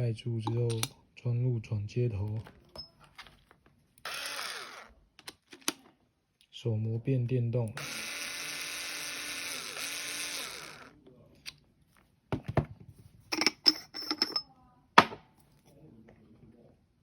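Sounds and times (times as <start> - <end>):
cordless screwdriver running: 4.0 - 4.9, 7.8 - 11.0.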